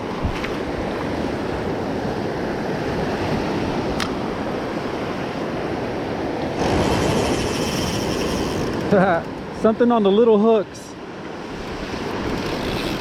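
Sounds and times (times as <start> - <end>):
surf washing onto beach: 0.0 - 10.2.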